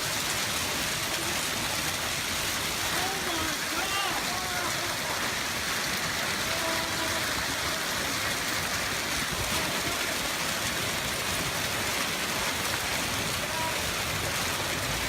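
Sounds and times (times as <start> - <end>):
hail and rain pelting down: 0.0 - 15.0.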